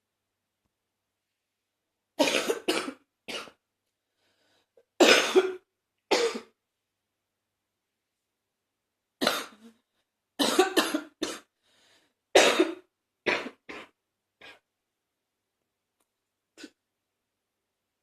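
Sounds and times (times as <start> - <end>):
person coughing: 2.2 - 3.6, 5.0 - 6.6, 9.2 - 9.8, 10.4 - 11.5, 12.4 - 14.6.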